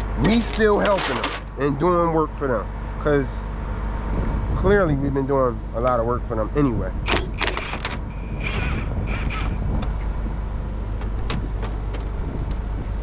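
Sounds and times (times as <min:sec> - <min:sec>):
truck rumble from inside cab: 0:06.5 - 0:13.0.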